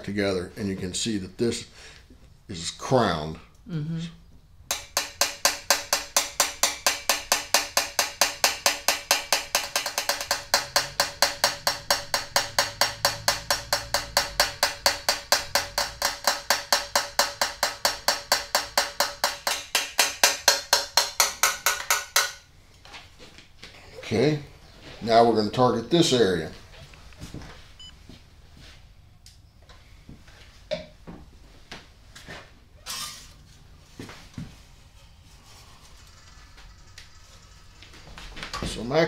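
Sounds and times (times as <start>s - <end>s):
hammer tapping brass bell: 4.7s - 22.3s.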